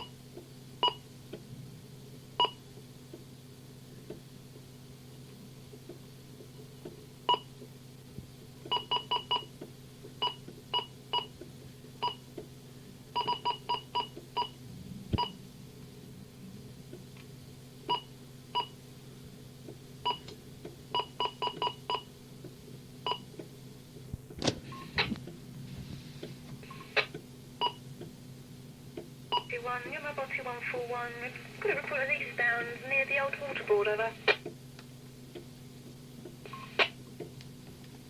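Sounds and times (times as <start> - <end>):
scanning radio hum: 29.3 - 34.4, 36.4 - 37.0.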